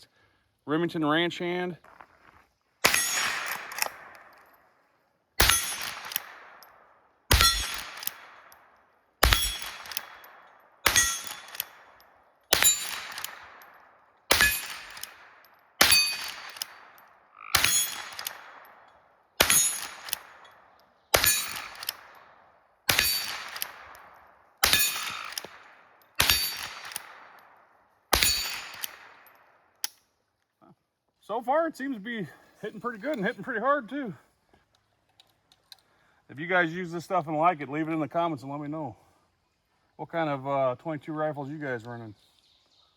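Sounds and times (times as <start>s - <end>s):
rifle shots: 2.8s - 4.4s, 5.4s - 18.8s, 19.4s - 29.4s.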